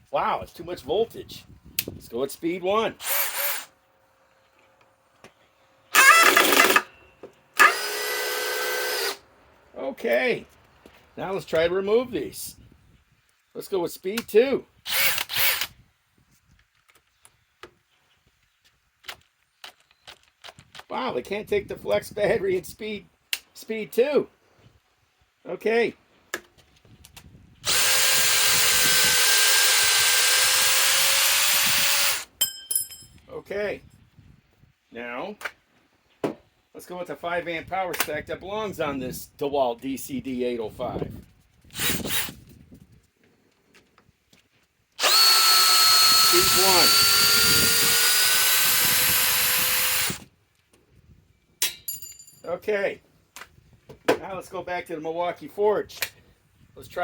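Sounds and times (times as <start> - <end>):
cordless drill running: 3.0 - 3.7, 5.9 - 6.9, 7.6 - 9.2, 14.9 - 15.7, 27.6 - 32.3, 41.8 - 42.3, 45.0 - 50.3.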